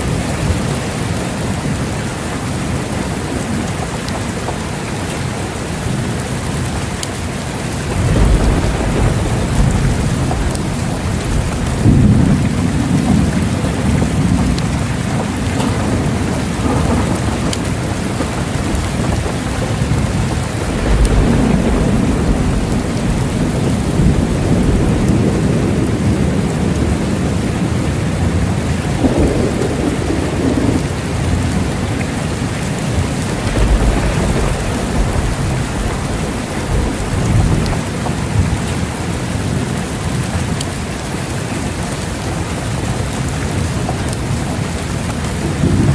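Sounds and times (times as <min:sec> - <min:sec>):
heavy rain hissing: 0:00.0 - 0:45.9
rolling thunder: 0:07.5 - 0:40.2, 0:45.2 - 0:45.9.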